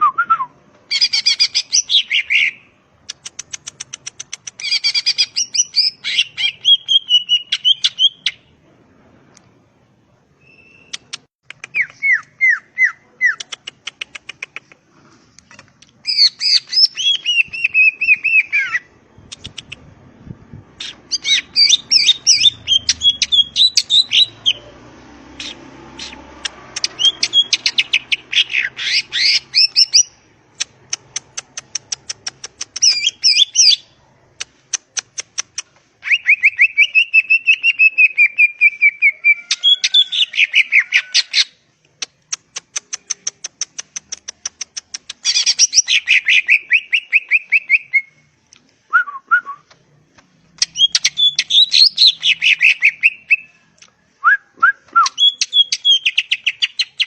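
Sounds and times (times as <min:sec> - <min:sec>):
bird singing varied song: 0:00.9 - 0:02.8, 0:04.6 - 0:08.6, 0:10.4 - 0:13.4, 0:16.0 - 0:30.2, 0:32.2 - 0:34.0, 0:45.1 - 0:48.3, 0:50.6 - 0:53.6, 0:54.9 - 0:57.0.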